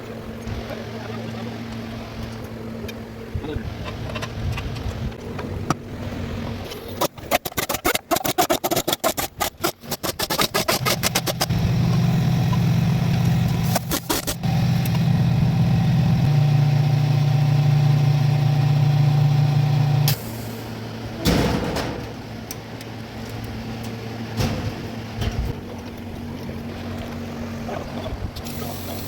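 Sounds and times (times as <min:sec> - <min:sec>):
diesel engine running: 0:00.0 - 0:07.3, 0:09.7 - 0:29.0
diesel engine cranking on starter: 0:09.8 - 0:23.6.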